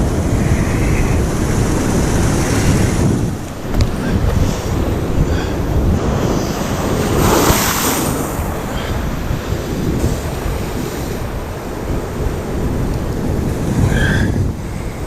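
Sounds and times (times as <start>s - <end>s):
surf breaking on rocks: 0.0s - 14.2s
wind buffeting microphone: 0.0s - 15.0s.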